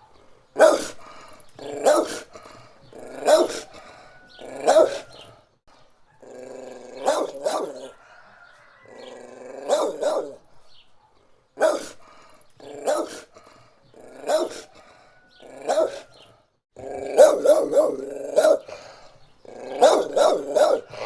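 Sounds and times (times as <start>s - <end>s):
dog barking: 0.0s - 1.0s, 1.6s - 2.3s, 3.0s - 3.8s, 4.4s - 5.2s, 7.0s - 8.2s, 9.6s - 10.4s, 11.0s - 12.0s, 12.7s - 13.3s, 14.1s - 14.8s, 15.5s - 16.1s, 17.1s - 18.8s, 19.7s - 21.0s
dog growling: 6.2s - 8.0s, 8.8s - 10.4s, 11.6s - 16.2s, 16.8s - 21.0s.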